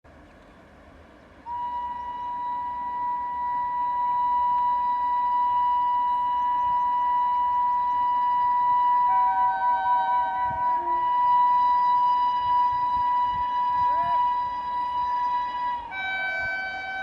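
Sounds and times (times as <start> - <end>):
train rumbling on track: 0.1 - 17.0
locomotive air horn blast: 1.4 - 17.0.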